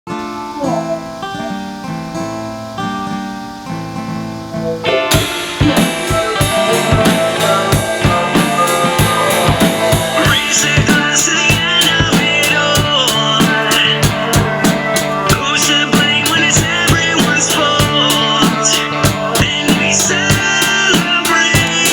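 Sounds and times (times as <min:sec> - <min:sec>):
rock guitar notes: 0:00.1 - 0:21.9
rock band playing: 0:04.4 - 0:21.9
high wavering lead line: 0:04.5 - 0:10.7
drum kit: 0:04.6 - 0:21.9.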